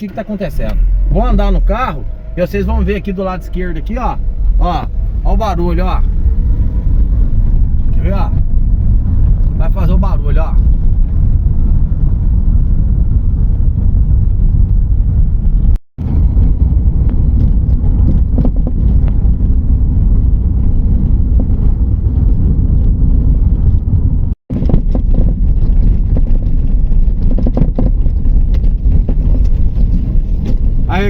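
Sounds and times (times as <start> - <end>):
road rumble inside vehicle: 0.0 - 31.0
wind on microphone: 0.8 - 31.0
windshield knocking and rattling: 16.3 - 19.8, 21.2 - 31.0.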